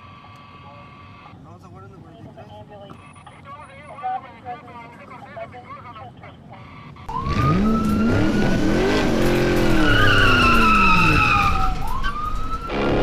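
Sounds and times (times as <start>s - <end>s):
vehicle engine revving: 7.0s - 13.0s.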